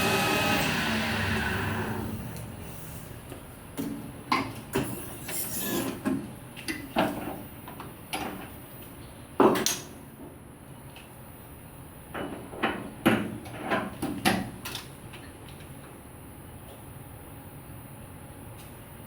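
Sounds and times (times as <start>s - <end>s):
lathe running down: 0.0s - 3.1s.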